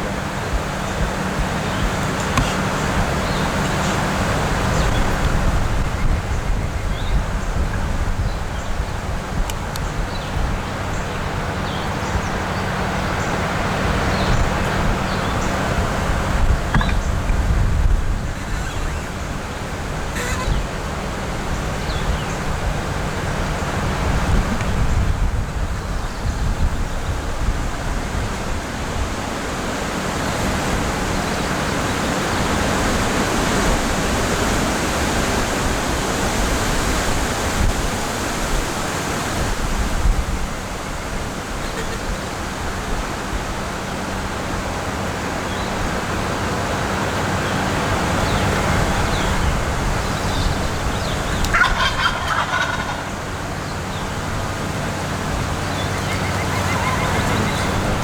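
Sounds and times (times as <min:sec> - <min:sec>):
wind on microphone: 0:00.0 - 0:44.4, 0:53.0 - 0:58.0
turkey gobbling: 0:18.2 - 0:21.1, 0:50.1 - 0:54.2, 0:55.4 - 0:58.0.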